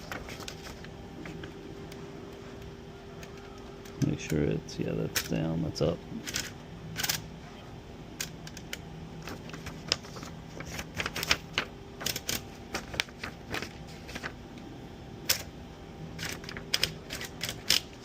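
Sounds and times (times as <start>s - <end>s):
typewriter keys clacking: 12.0s - 13.7s, 16.2s - 18.0s.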